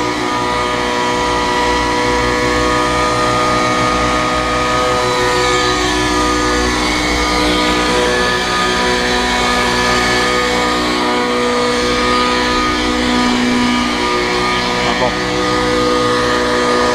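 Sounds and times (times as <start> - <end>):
engine running steadily: 0.0 - 16.9.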